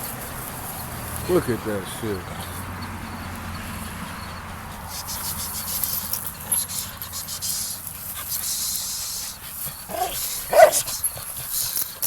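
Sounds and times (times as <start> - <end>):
dog scuffling with rope: 4.9 - 12.0.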